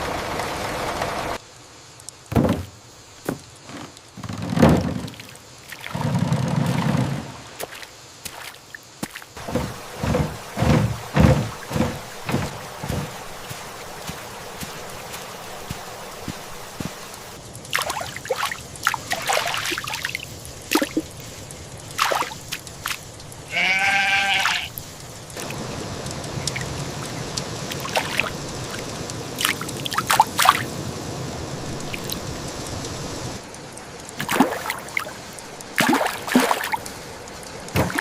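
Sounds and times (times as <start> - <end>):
heavy rain: 0.0 - 38.0
water trickling and splashing: 0.8 - 38.0
animal bleat: 23.5 - 24.8.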